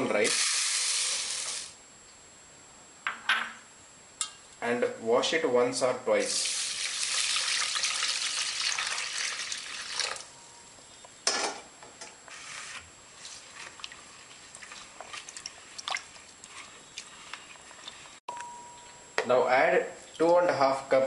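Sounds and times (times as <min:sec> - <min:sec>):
tap water running: 0:06.2 - 0:10.3.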